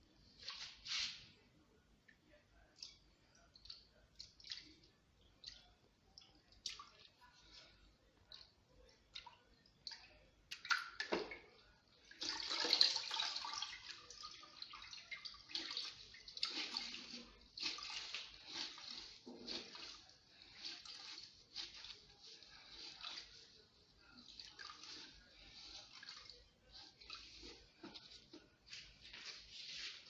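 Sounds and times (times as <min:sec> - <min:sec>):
wet mop swishing: 0:00.2 - 0:01.4, 0:12.1 - 0:30.0
water splashing: 0:10.5 - 0:30.0.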